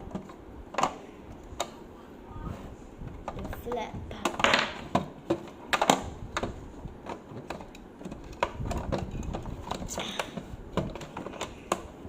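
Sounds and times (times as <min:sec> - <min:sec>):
plastic clicks and knocks: 0:00.0 - 0:01.8, 0:03.0 - 0:12.0.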